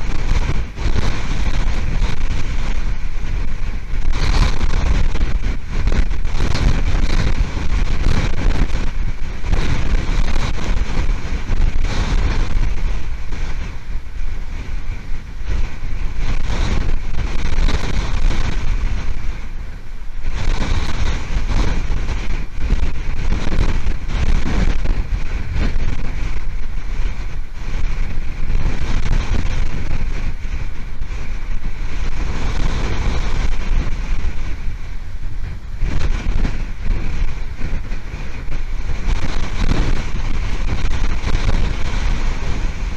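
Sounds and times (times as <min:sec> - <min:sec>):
strong wind buffeting microphone: 0:00.0 - 0:42.9.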